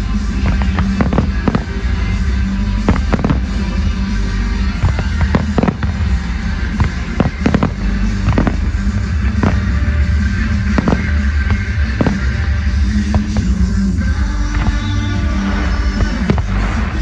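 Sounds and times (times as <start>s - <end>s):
fireworks bangs and pops: 0.0s - 17.0s
music over sound system: 0.0s - 17.0s.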